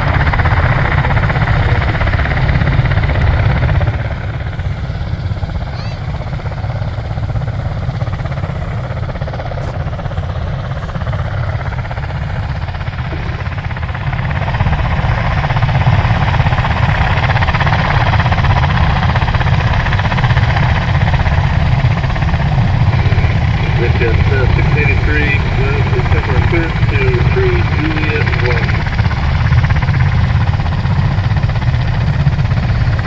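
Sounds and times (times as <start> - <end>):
tiltrotor aircraft engines rumbling: 0.0 - 33.0.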